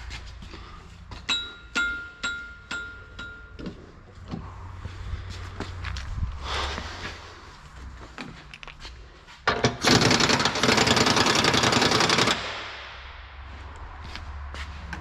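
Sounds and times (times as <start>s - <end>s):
scattered clicks and knocks: 9.4s - 12.6s
pneumatic impact wrench hammering: 9.5s - 12.8s.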